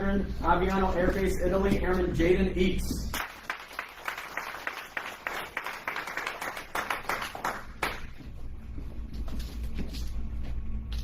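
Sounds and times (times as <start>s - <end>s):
audience clapping: 3.2s - 8.2s.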